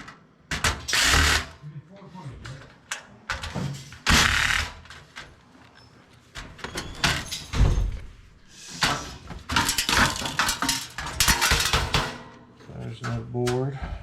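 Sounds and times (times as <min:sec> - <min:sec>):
metal parts banging and clattering: 0:06.4 - 0:13.7.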